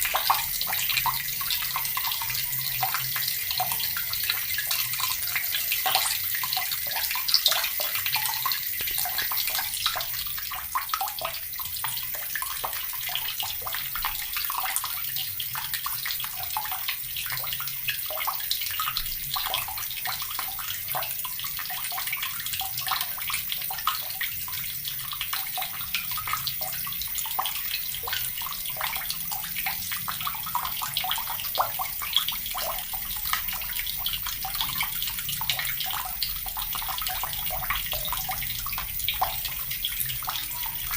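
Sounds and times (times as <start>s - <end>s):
water tap running and splashing: 0.0s - 40.9s.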